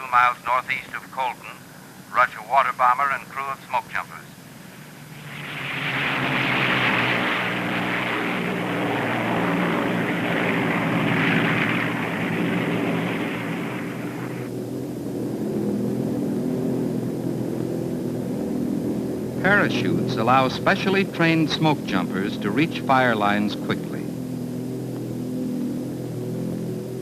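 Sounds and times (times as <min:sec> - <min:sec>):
propeller airplane engines droning: 0:00.0 - 0:27.0
loud rushing hiss: 0:04.5 - 0:14.5.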